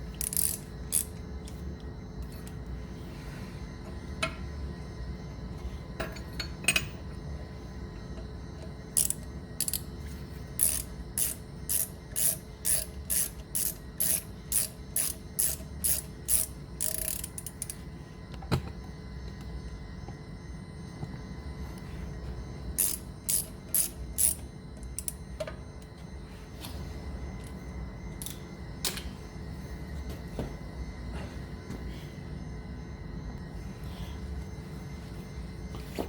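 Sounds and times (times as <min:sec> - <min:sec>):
ratchet wrench clicking: 0:00.1 - 0:01.2, 0:09.0 - 0:09.9, 0:10.6 - 0:17.8, 0:22.8 - 0:24.4.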